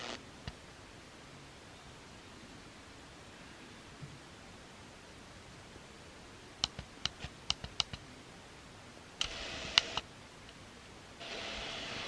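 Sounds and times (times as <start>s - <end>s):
radio speaker hiss: 0.0s - 0.3s, 11.2s - 12.0s.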